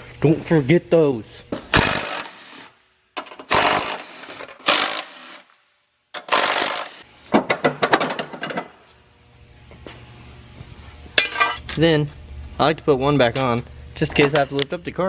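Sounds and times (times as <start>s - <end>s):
tools rattling mechanically: 6.2s - 8.6s.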